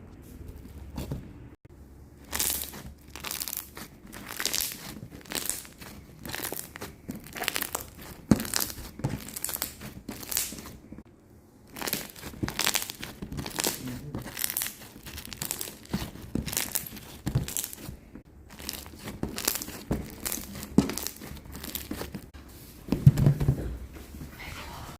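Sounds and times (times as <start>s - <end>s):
slime crackling and crinkling: 2.2s - 11.0s, 11.6s - 22.4s.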